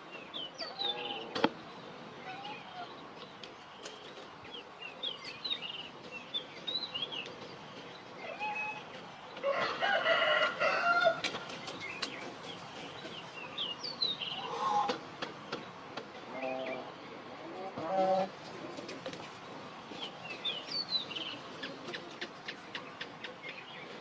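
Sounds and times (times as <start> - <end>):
small birds chirping: 0.0 - 17.5, 18.2 - 24.0
rooster crowing: 9.4 - 11.2.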